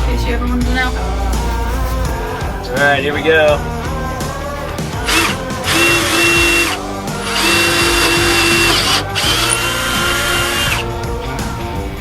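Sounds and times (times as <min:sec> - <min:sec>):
power drill boring holes: 0:05.0 - 0:10.9.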